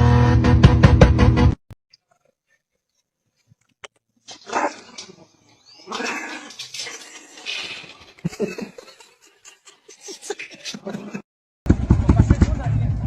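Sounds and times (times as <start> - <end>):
animal calling roughly: 4.3 - 8.0.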